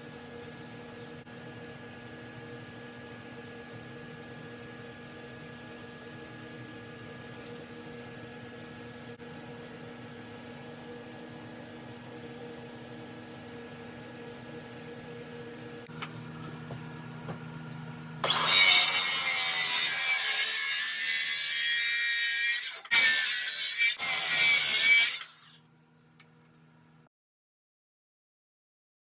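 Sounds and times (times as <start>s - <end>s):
power tool grinding metal: 18.2s - 25.6s.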